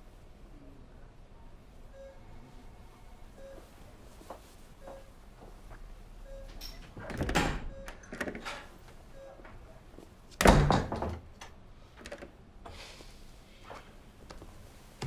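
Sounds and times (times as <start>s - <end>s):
door shutting with heavy thud: 7.0s - 7.7s, 10.4s - 11.3s
knock and rattle on door: 10.4s - 11.4s.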